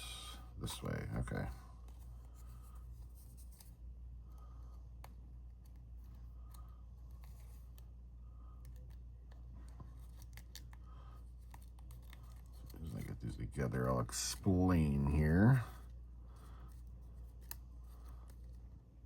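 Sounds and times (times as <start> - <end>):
steady low hum: 0.0 - 19.0
card pieces rustling and clicking: 8.6 - 15.3.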